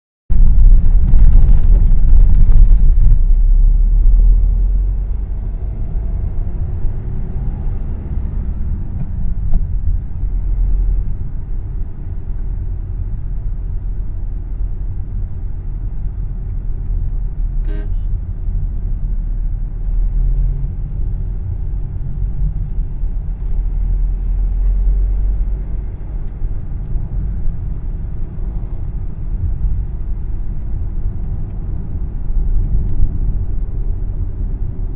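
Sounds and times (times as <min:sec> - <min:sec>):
motor vehicle rumble: 0:00.3 - 0:34.9
vehicle horn toot: 0:17.6 - 0:18.2.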